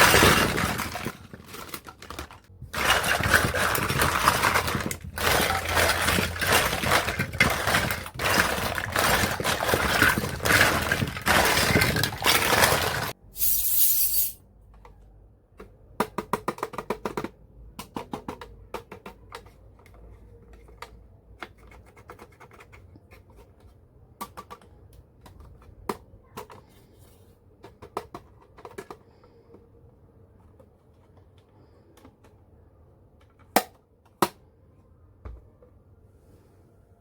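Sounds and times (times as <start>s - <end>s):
loud rustling: 0.0s - 13.2s.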